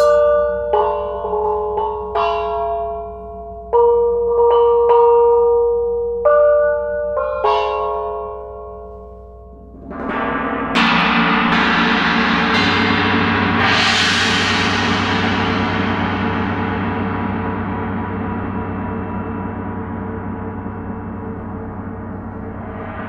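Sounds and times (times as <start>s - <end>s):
large gong struck: 9.7s - 23.0s
pitched metal strike ringing: 9.7s - 23.0s.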